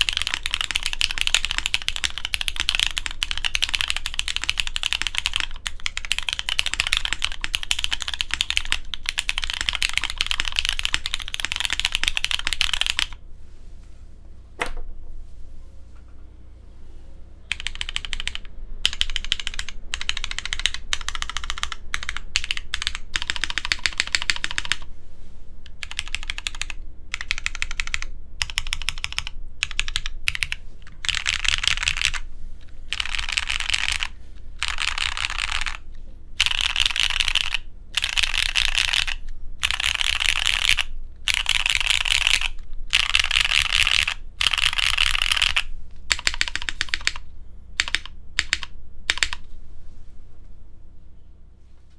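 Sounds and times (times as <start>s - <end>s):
fast typing on mechanical keyboard: 0.0s - 13.2s, 17.5s - 24.9s, 25.7s - 47.2s, 47.8s - 49.4s.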